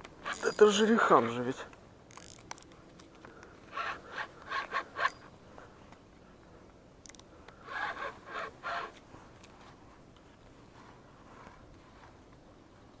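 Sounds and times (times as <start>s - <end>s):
rubbing and scraping: 3.7s - 5.3s, 7.7s - 9.0s.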